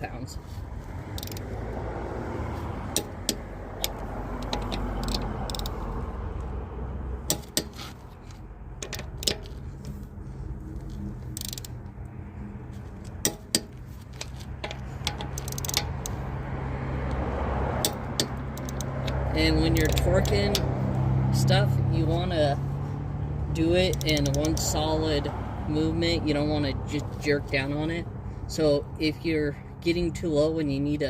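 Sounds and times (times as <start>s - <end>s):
torque wrench clicks: 1.1s - 1.5s, 2.9s - 5.8s, 8.8s - 9.6s, 11.2s - 11.9s, 13.2s - 16.2s, 17.8s - 19.2s, 19.8s - 20.7s, 23.8s - 24.8s.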